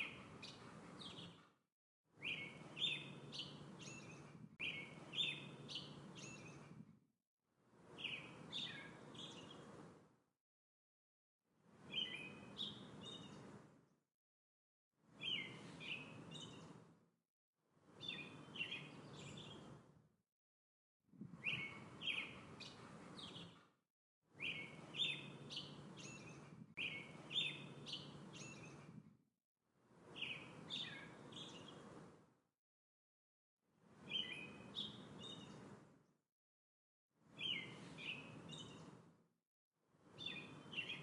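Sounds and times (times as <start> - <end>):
songbird chirping: 0.0 - 1.5, 2.2 - 6.8, 7.9 - 9.9, 11.8 - 13.6, 15.2 - 16.8, 17.9 - 19.8, 21.4 - 23.6, 24.4 - 29.0, 30.0 - 32.0, 34.0 - 35.8, 37.4 - 39.0, 40.2 - 41.0.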